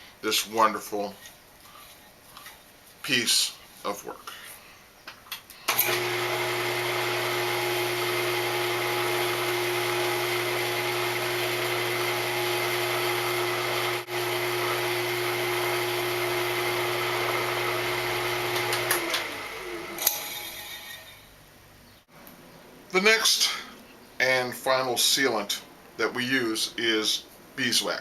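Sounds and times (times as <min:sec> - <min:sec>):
wood lathe humming and whining: 0:05.7 - 0:21.1.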